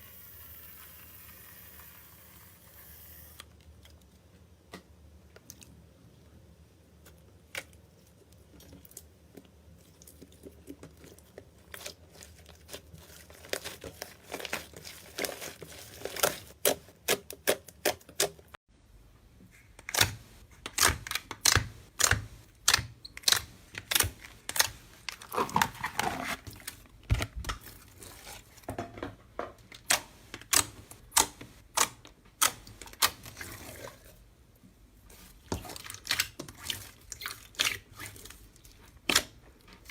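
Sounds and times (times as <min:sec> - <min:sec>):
slime squelching with wet pops: 0:35.1 - 0:39.4.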